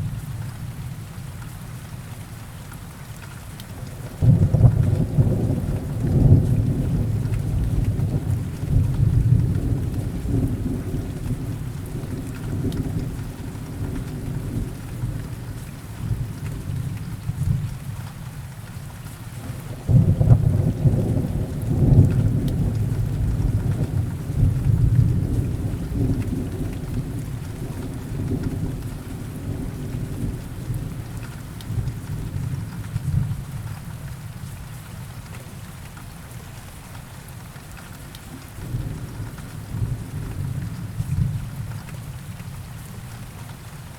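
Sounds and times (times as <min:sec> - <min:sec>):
steady rain: 0:00.0 - 0:43.9
rolling thunder: 0:04.2 - 0:16.8, 0:19.4 - 0:31.1.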